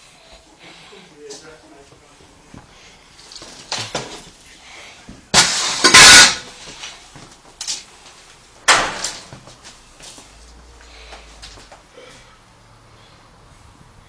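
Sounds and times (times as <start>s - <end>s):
door crashing and breaking: 5.3s - 6.6s, 8.7s - 9.3s.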